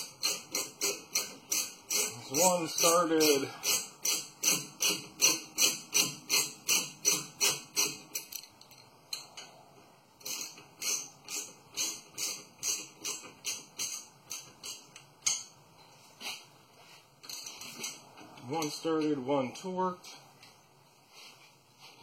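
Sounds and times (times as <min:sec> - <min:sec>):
hand ratchet clicking: 0:00.0 - 0:09.5, 0:10.2 - 0:15.5.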